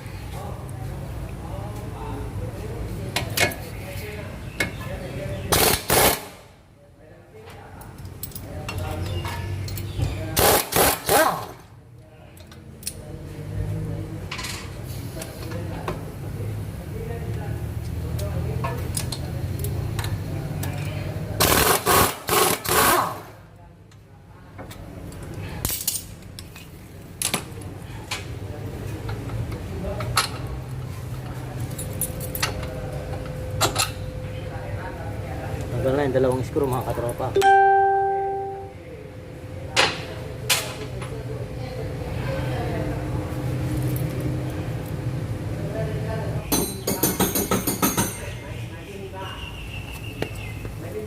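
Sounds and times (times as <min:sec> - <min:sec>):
pneumatic impact wrench bursts: 0:05.5 - 0:06.4, 0:10.4 - 0:11.6, 0:21.4 - 0:23.3
low steady hum: 0:37.3 - 0:39.7.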